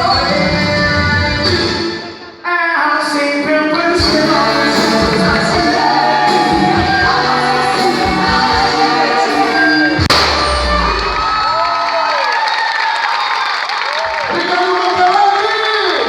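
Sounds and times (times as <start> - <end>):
music with singing and beat: 0.0 - 11.2.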